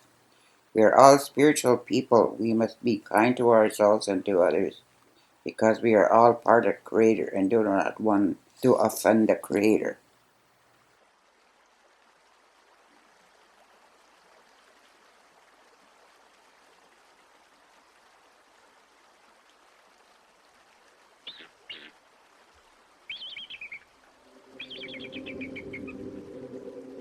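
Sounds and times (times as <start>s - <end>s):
faint steady hiss: 0.0s - 27.0s
bird chirps and trills: 21.3s - 21.9s, 23.1s - 27.0s
low held tones: 24.2s - 27.0s.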